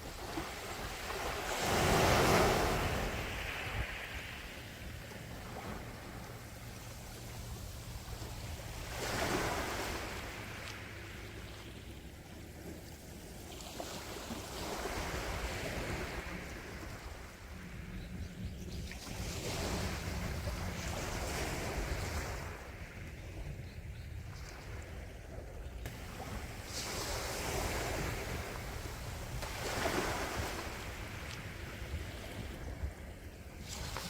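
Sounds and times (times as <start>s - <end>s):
sea waves washing onto shore: 0.0s - 17.6s, 25.8s - 34.0s.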